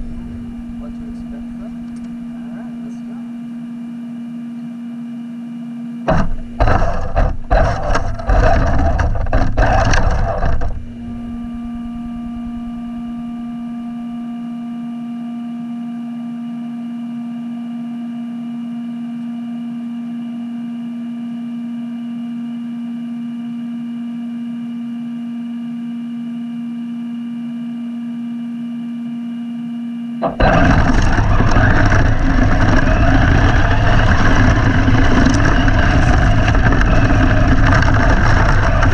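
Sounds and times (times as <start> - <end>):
electric toy car motor running: 30.4 - 38.9.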